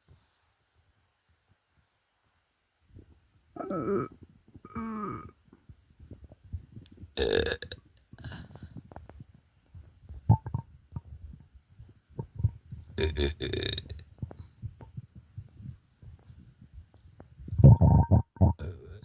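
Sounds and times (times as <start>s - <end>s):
stomach gurgles and clicks: 2.9s - 19.0s
person burping: 3.6s - 5.4s, 7.2s - 7.8s, 13.0s - 14.0s, 17.6s - 19.0s.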